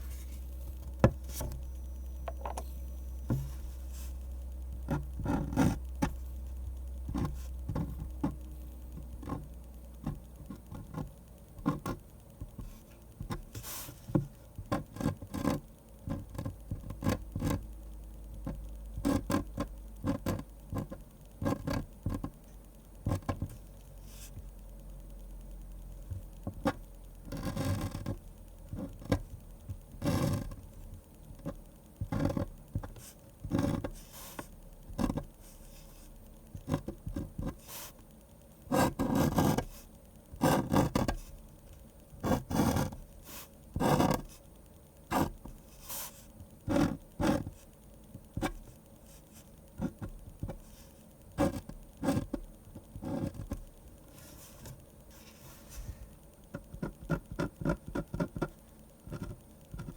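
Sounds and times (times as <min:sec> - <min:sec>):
pen scratching on paper: 0:04.9 - 0:06.2, 0:07.1 - 0:08.4, 0:09.2 - 0:17.6, 0:19.0 - 0:22.3, 0:26.6 - 0:28.2, 0:28.8 - 0:30.8, 0:31.4 - 0:38.0, 0:38.7 - 0:39.8, 0:40.4 - 0:41.3, 0:42.2 - 0:44.4, 0:45.1 - 0:47.7, 0:48.4 - 0:53.6, 0:54.2 - 0:59.9.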